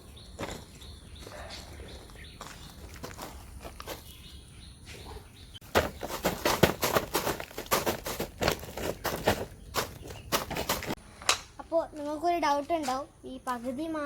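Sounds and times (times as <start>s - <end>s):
soil rustling and crunching: 2.4s - 4.3s, 5.6s - 11.0s.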